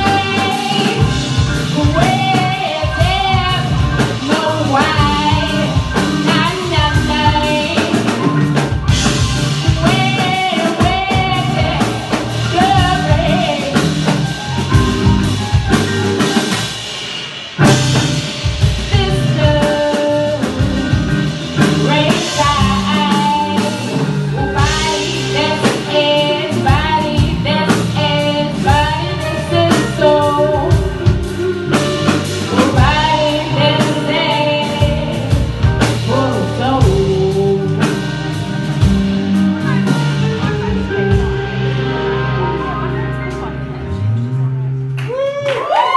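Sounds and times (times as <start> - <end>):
drum kit: 0.0 - 45.9
guitar: 0.0 - 45.9
person singing: 21.6 - 38.4.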